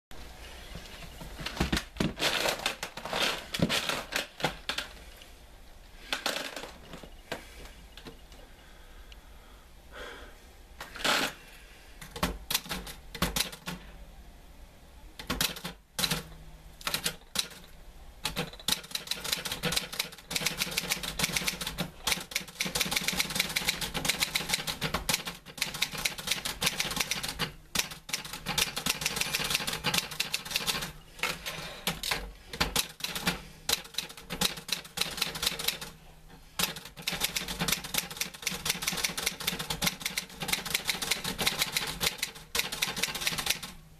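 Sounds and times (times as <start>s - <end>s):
manual typewriter key strikes: 12.1s - 13.8s, 15.2s - 17.6s, 18.2s - 30.9s, 36.6s - 43.7s.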